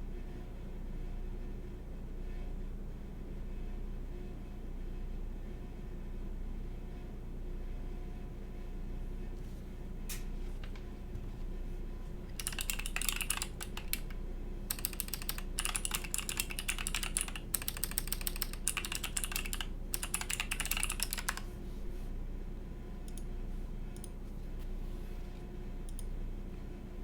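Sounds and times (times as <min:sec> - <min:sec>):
typing on mechanical keyboard: 0:12.3 - 0:21.5.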